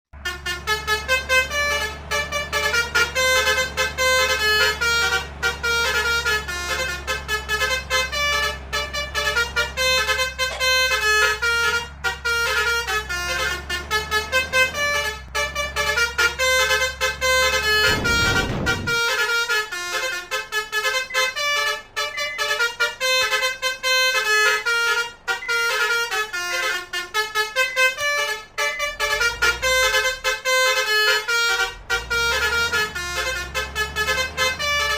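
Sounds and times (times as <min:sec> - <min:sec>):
low engine hum: 0:00.2 - 0:19.1
multi-tone bus horn melody: 0:00.2 - 0:34.9
brief rush of noise: 0:17.9 - 0:19.0.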